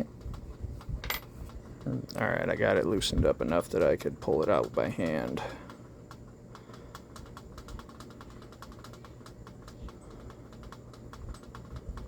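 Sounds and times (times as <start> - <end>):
low steady hum: 0.0 - 12.0
rapid light clicking: 3.4 - 12.0.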